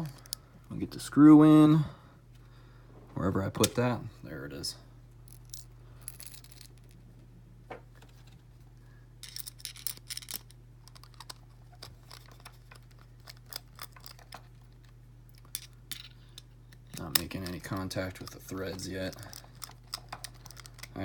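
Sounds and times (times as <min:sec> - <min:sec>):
screw scraping metal padlock: 0:09.2 - 0:14.5, 0:16.8 - 0:21.0.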